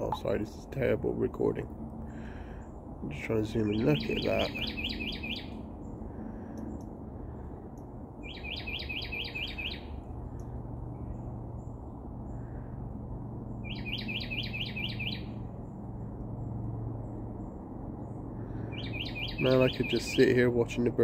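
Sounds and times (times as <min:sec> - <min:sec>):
songbird singing: 0:00.0 - 0:12.6, 0:13.4 - 0:15.8, 0:16.4 - 0:21.0
low steady hum: 0:00.0 - 0:13.7.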